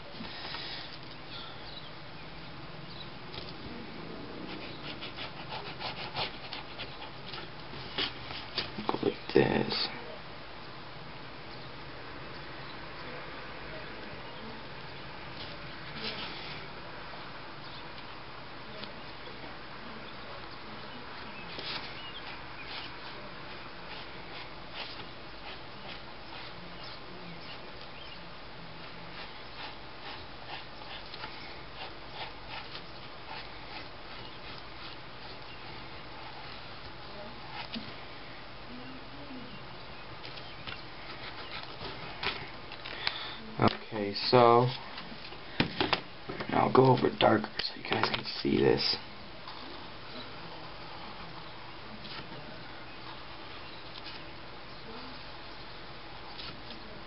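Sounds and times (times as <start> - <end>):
steady hiss: 0.0 - 1.4
pencil scratching on paper: 4.5 - 7.3.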